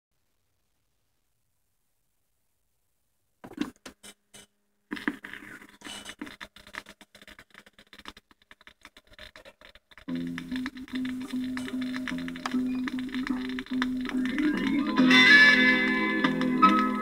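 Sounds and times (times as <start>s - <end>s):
vinyl surface crackle: 3.4s - 17.0s
song playing: 11.0s - 17.0s.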